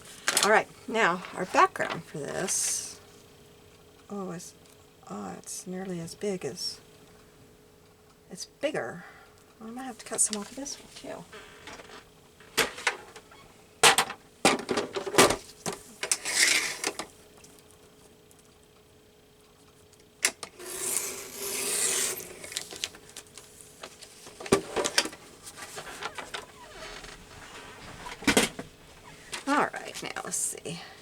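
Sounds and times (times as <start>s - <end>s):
magazine page rustling: 22.4s - 28.4s.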